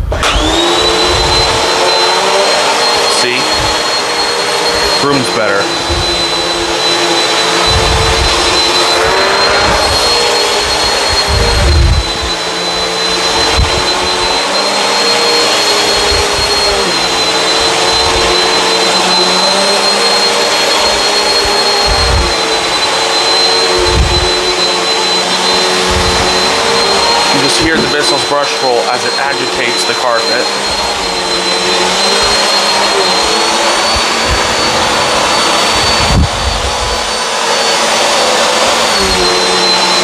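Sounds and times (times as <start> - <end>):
vacuum motor whine: 0.0 - 40.0
brush roll agitating carpet: 0.1 - 40.0
low thumps: 5.7 - 14.4, 20.8 - 28.4.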